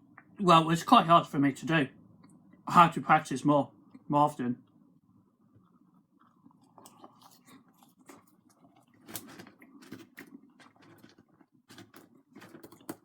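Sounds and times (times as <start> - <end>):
close-up chewing food: 5.4 - 13.0.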